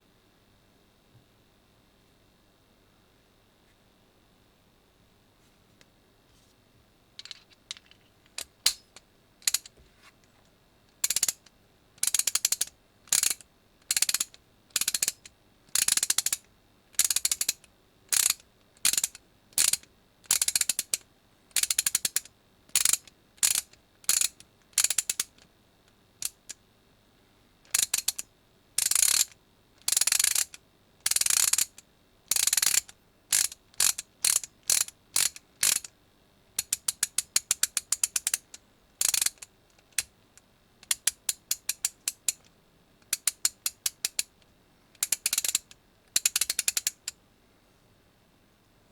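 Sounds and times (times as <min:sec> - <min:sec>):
ratchet handle clicking: 0:07.2 - 0:09.7, 0:11.0 - 0:11.4, 0:12.0 - 0:15.2, 0:15.8 - 0:16.4, 0:17.0 - 0:17.6, 0:18.2 - 0:20.9, 0:27.7 - 0:28.2, 0:28.8 - 0:29.3, 0:29.9 - 0:35.9, 0:36.6 - 0:39.4, 0:45.0 - 0:45.6, 0:46.2 - 0:47.0.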